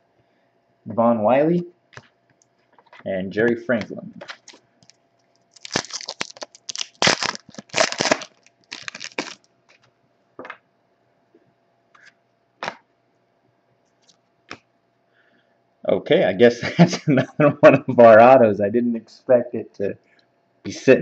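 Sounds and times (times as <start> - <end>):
foil wrapper tearing and crinkling: 4.3 - 9.8.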